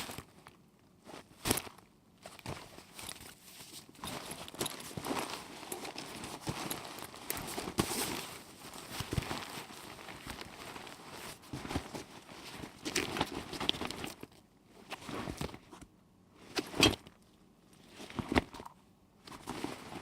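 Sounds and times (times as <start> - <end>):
backpack rattling and rustling: 1.5 - 15.6, 19.3 - 20.0
contents jangling: 2.3 - 8.8.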